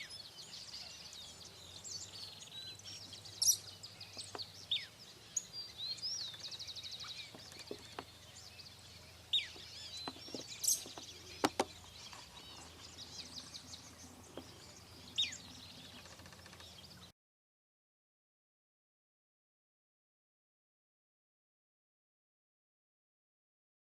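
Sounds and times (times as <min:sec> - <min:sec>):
birds chirping and trilling: 0:00.0 - 0:17.1.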